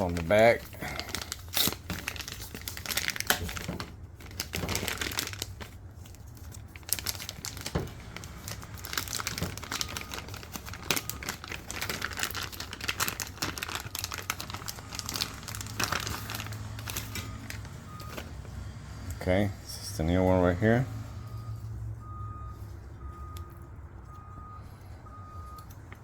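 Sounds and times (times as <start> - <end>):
packaging tearing: 0.0 - 18.2
packaging crackling and rustling: 0.0 - 18.6.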